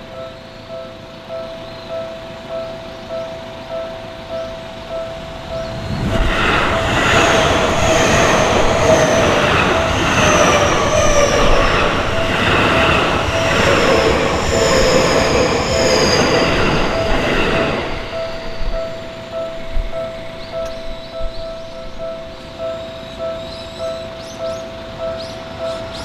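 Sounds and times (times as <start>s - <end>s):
crossing alarm bell dinging: 0.0s - 26.0s
electric train passing: 0.0s - 26.0s
high gliding tones: 5.0s - 22.5s.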